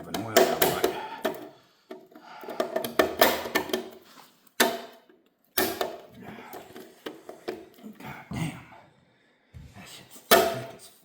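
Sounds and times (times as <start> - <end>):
metal tools clicking and clanking: 0.0 - 4.0.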